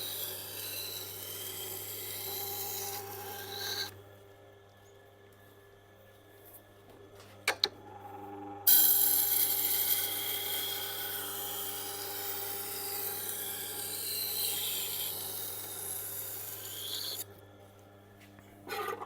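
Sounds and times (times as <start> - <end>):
sharpener motor hum: 0.0 - 3.9, 8.7 - 17.3.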